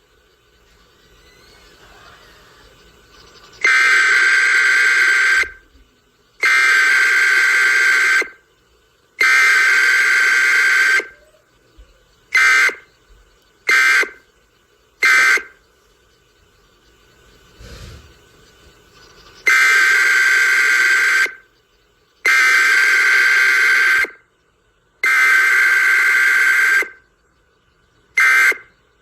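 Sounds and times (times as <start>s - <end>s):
loud buzzing data tones: 0.0s - 8.5s, 9.2s - 11.2s, 12.3s - 24.3s, 25.0s - 27.1s, 28.1s - 29.0s.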